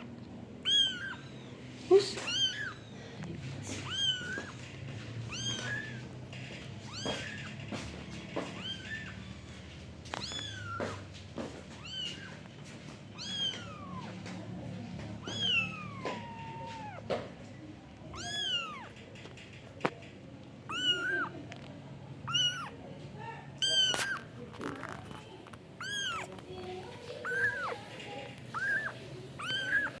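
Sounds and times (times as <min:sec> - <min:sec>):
kitten mewing: 0:00.6 - 0:03.0, 0:03.7 - 0:04.6, 0:05.3 - 0:06.1, 0:08.6 - 0:11.0, 0:13.2 - 0:14.2, 0:15.2 - 0:17.1, 0:18.1 - 0:19.0, 0:20.7 - 0:21.4, 0:22.2 - 0:22.8, 0:23.6 - 0:25.0, 0:25.8 - 0:26.4, 0:27.2 - 0:27.9, 0:28.5 - 0:30.0.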